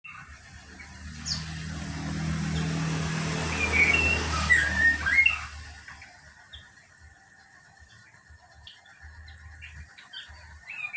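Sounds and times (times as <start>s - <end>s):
passing motor vehicle hum: 0.1s - 6.6s
bird whistling: 3.3s - 6.7s, 9.6s - 10.9s.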